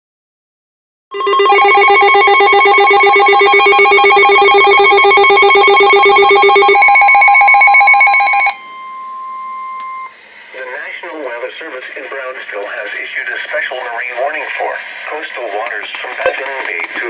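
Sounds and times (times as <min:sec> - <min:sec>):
warbling emergency alert alarm: 0:01.1 - 0:12.4
steady tone: 0:01.2 - 0:11.2.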